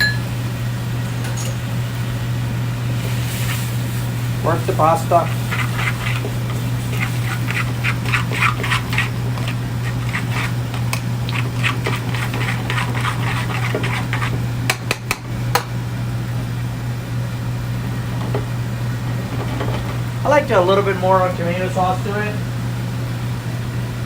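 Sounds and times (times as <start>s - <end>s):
pasta sizzling in a pan: 1.8s - 14.7s
utensil scraping pan: 4.4s - 15.2s.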